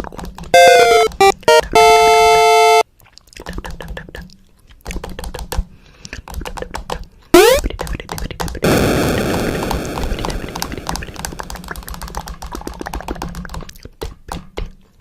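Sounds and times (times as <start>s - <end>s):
buzzer-like electronic tone: 0.6s - 2.8s
quick irregular clicks: 3.4s - 8.7s.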